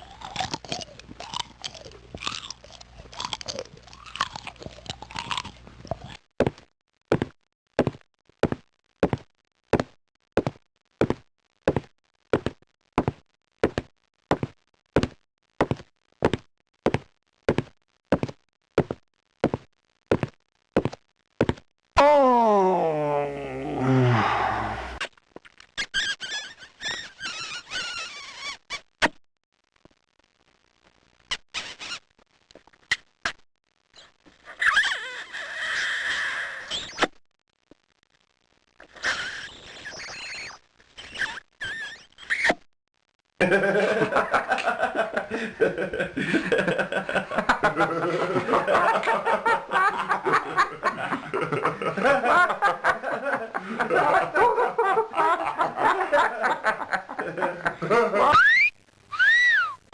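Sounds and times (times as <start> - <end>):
vocal clicks and squeaks: 0.0 - 6.7, 25.0 - 29.2, 31.2 - 37.2, 38.8 - 42.7, 58.3 - 59.9
footsteps walking: 6.0 - 21.6
raspy vocal squeal: 22.0 - 25.0, 34.0 - 37.1, 39.0 - 42.6, 58.3 - 59.9.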